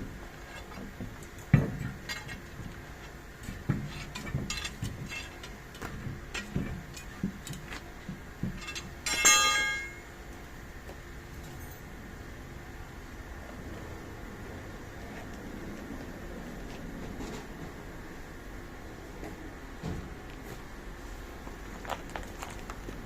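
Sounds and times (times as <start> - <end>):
metal tools knocking and clinking: 8.5 - 10.1
ringing metal clang: 8.6 - 10.1.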